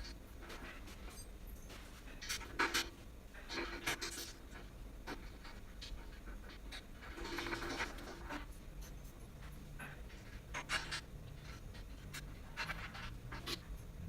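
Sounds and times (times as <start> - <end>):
tools scraping and rattling: 7.0 - 14.0.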